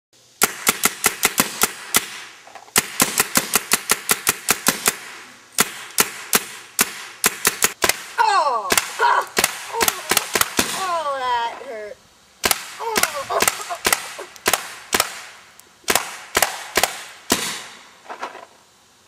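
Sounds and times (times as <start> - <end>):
paintball marker firing sharp pops: 0.4 - 10.8, 12.4 - 17.8
person crying out: 8.2 - 12.0, 12.8 - 14.4.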